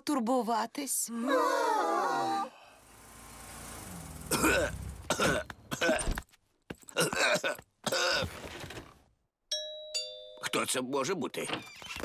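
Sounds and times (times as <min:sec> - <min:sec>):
cartoon character coughing: 0:04.3 - 0:06.2, 0:06.9 - 0:08.3.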